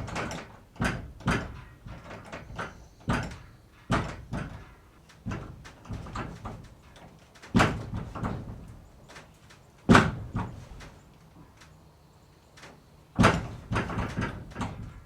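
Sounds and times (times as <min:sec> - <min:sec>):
barn door banging: 0:00.0 - 0:08.8, 0:09.9 - 0:11.0, 0:13.2 - 0:15.0.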